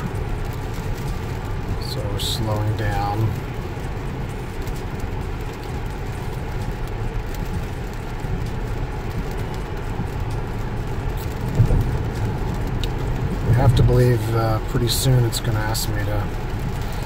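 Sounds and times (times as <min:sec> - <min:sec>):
rain and spray hissing: 0:00.0 - 0:17.0
raindrops ticking: 0:00.0 - 0:17.0
tyres rumbling on wet road: 0:00.0 - 0:17.0.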